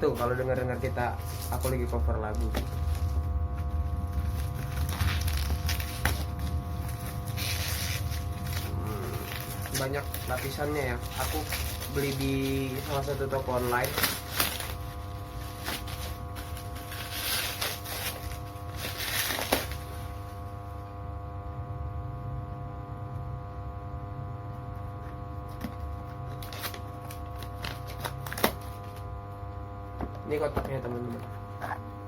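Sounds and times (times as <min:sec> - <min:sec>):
packaging rustling and crinkling: 0:00.0 - 0:20.5
electrical mains hum: 0:00.0 - 0:32.0.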